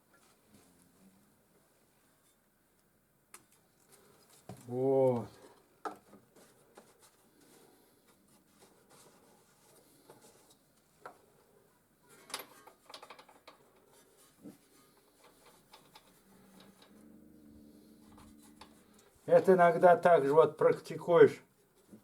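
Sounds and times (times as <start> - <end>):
tools clicking and knocking: 12.2 - 14.0, 15.2 - 17.0.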